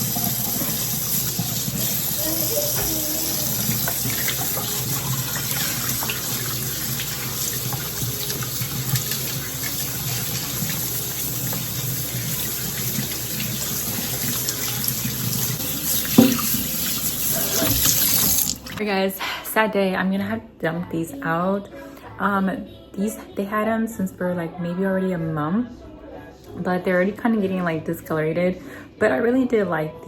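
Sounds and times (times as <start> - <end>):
tap running into sink: 0.0 - 18.8.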